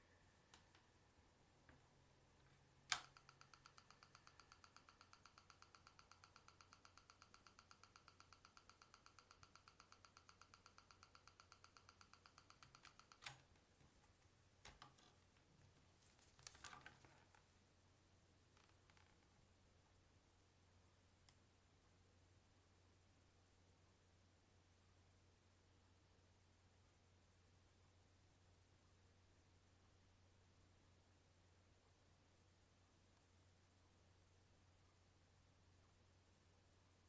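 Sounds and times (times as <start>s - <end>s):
sharp clicks: 2.8s - 13.6s
tablet electronic buzzing: 2.9s - 13.4s.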